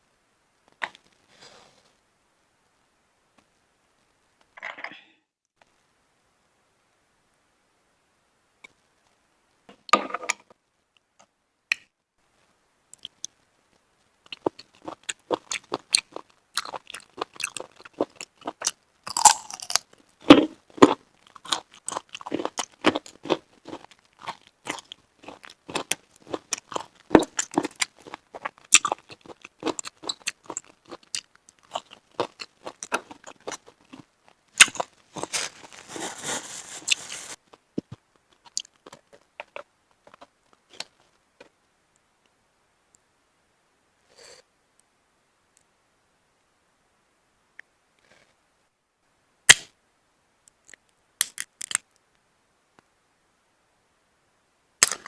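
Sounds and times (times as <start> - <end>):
close wet chewing: 14.2 - 41.0.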